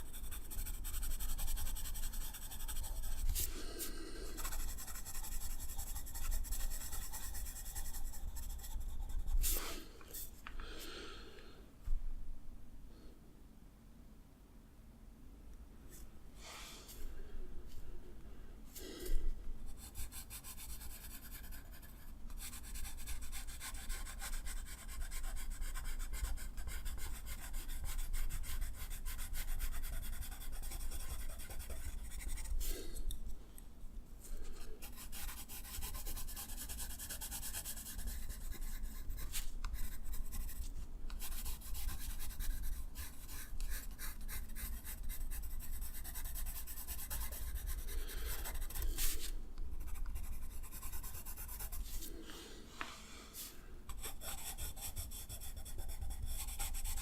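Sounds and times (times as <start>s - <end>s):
drawing tool scratching paper: 0.0s - 3.5s, 4.3s - 9.6s, 19.8s - 32.6s, 34.8s - 52.1s, 53.9s - 57.0s.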